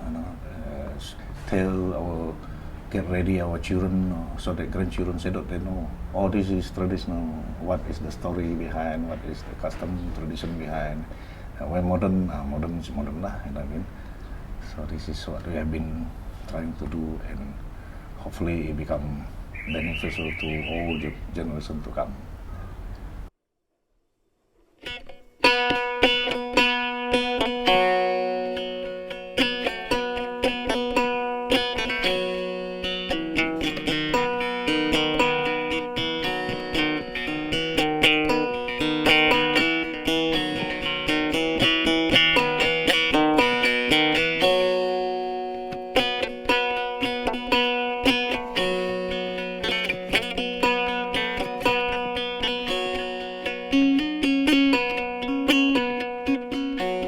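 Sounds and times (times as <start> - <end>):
plucked lute melody: 0.0 - 21.5, 24.8 - 57.0.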